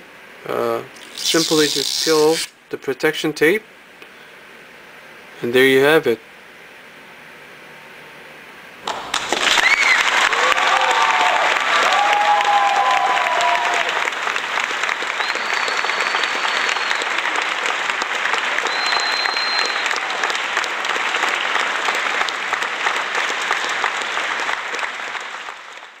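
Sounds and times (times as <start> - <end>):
crowd applause: 8.8 - 26.0
faint high whistles: 15.2 - 17.2, 18.6 - 20.0.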